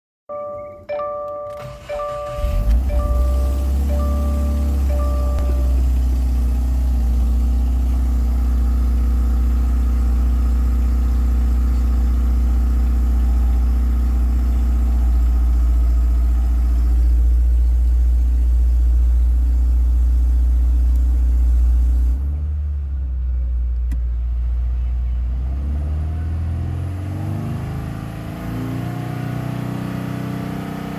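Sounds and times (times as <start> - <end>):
car engine idling: 1.0 - 25.6.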